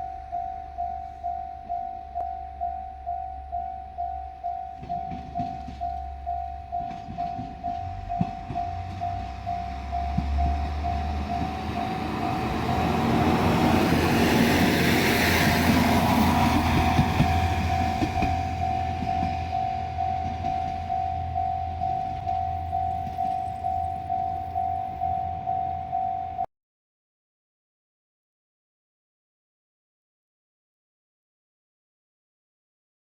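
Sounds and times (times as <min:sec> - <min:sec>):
diesel train passing: 0:00.0 - 0:26.5
level-crossing warning bell dinging: 0:00.0 - 0:26.5
train wheels on rail joints: 0:03.9 - 0:26.4.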